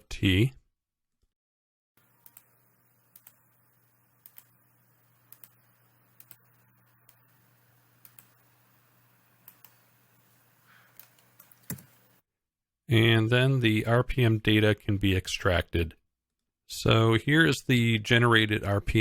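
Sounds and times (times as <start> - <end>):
computer mouse clicks: 2.2 - 3.5, 4.2 - 4.6, 5.2 - 8.5, 9.4 - 10.2, 10.9 - 12.2.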